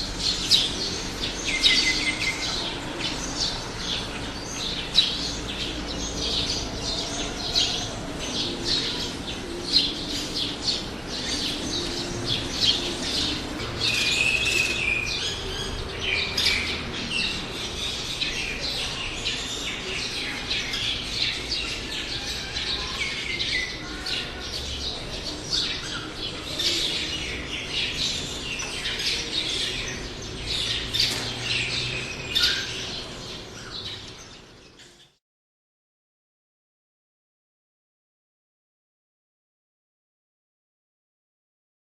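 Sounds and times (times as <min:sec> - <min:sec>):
small birds chirping: 0:00.0 - 0:35.2.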